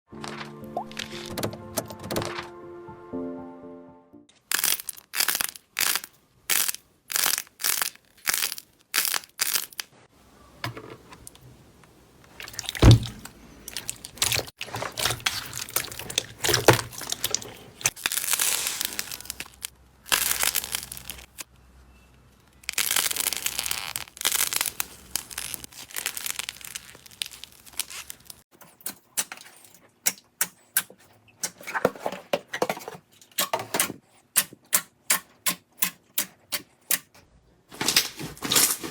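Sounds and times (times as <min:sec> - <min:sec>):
slime crackling and tearing: 0:04.5 - 0:09.9, 0:13.6 - 0:21.5, 0:22.5 - 0:28.4
slime squishing: 0:12.3 - 0:21.4, 0:22.6 - 0:28.4.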